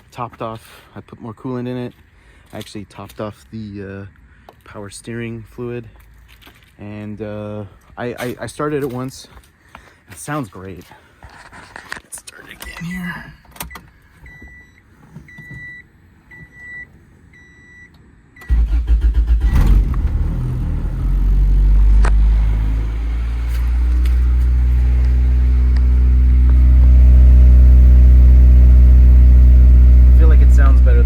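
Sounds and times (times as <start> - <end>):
car engine cranking and idling: 18.4 - 31.0.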